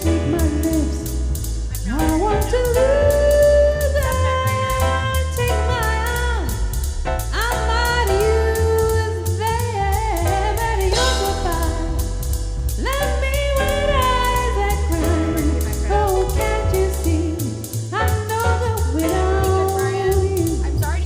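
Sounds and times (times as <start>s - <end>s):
song with heavy bass beat: 4.4s - 21.0s.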